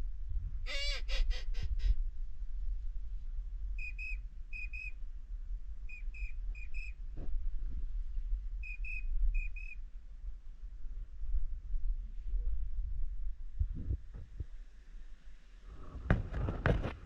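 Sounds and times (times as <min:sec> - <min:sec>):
constant low rumble: 0:00.0 - 0:17.0
duck whistle call: 0:00.7 - 0:02.0, 0:03.8 - 0:04.9.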